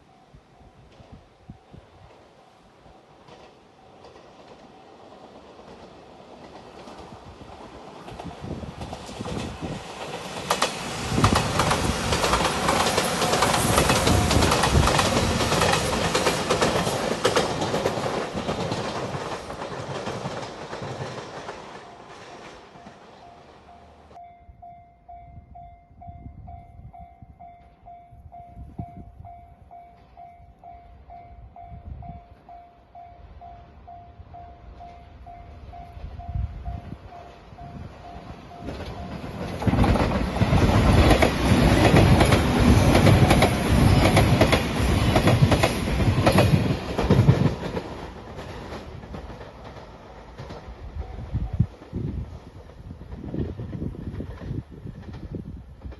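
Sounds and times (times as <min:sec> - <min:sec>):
train wheels clacking: 0:03.0 - 0:24.2, 0:34.4 - 0:55.9.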